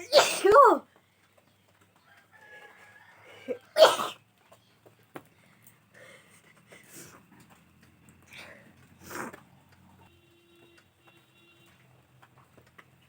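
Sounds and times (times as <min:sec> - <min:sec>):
woman sneezing: 0:00.0 - 0:00.7.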